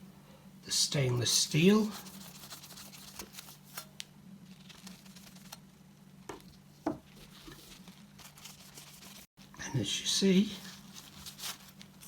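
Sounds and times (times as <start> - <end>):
tissue rubbing on cutlery: 1.6 - 3.9, 7.1 - 9.3.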